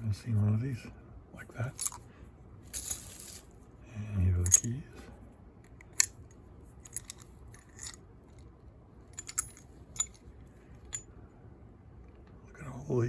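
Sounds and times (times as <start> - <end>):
keys clicking on padlock: 1.8 - 2.0, 4.4 - 4.7, 6.8 - 8.0, 9.1 - 10.2.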